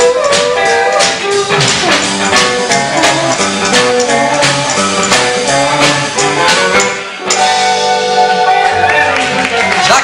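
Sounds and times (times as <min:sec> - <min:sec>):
country band playing: 0:00.0 - 0:10.0.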